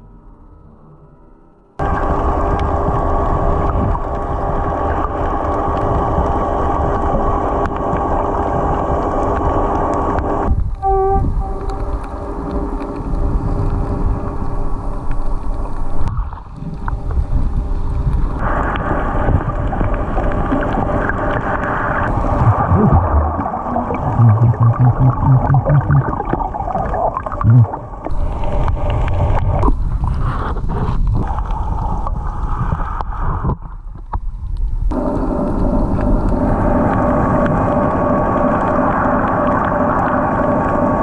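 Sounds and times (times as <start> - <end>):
boat engine drone underwater: 0.0 - 41.0
even pulses: 22.0 - 28.1.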